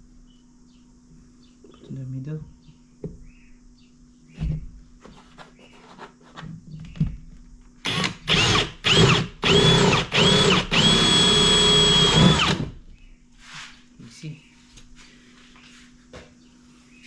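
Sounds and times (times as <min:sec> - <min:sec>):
power drill whining: 0:07.8 - 0:12.8.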